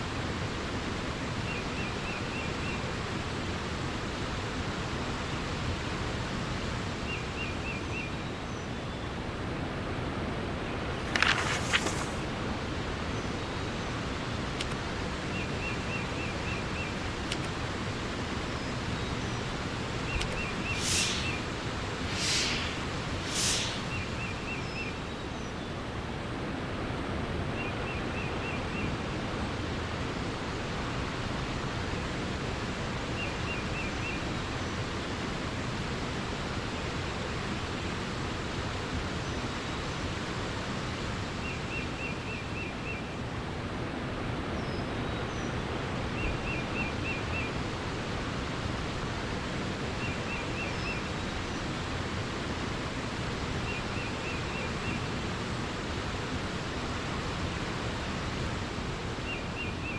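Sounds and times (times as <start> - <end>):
flowing water rushing: 9.2 - 25.1, 47.5 - 59.9
bird trilling: 20.1 - 24.3
hissing splashes: 20.2 - 24.3.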